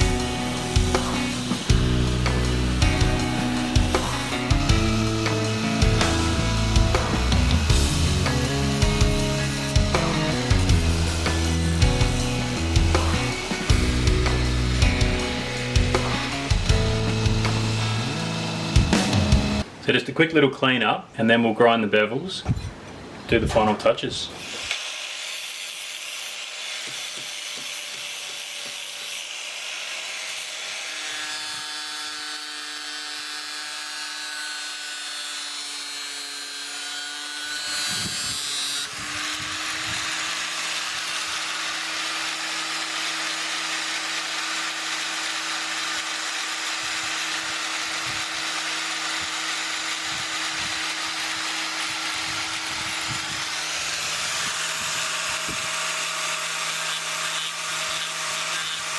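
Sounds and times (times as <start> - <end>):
steel grinding hiss: 0.0 - 19.6
belt sander motor hum: 0.0 - 19.7, 29.6 - 58.9.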